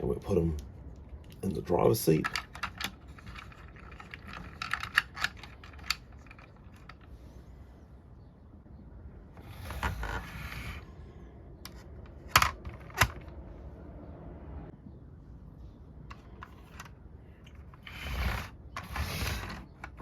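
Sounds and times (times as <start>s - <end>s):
plastic toy clicks: 2.2s - 7.0s.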